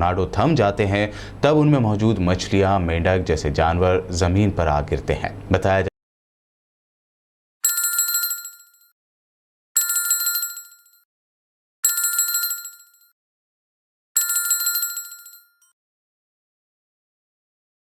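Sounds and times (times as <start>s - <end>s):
small metal bell trilling: 7.6s - 8.9s, 9.8s - 11.0s, 11.8s - 13.1s, 14.2s - 15.7s.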